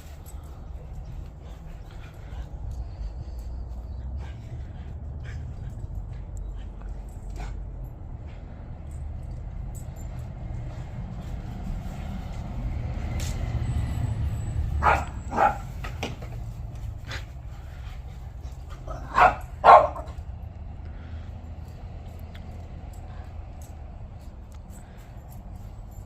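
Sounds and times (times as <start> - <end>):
steady low rumble: 0.0 - 26.0
dog barking: 14.8 - 15.8, 18.9 - 20.2.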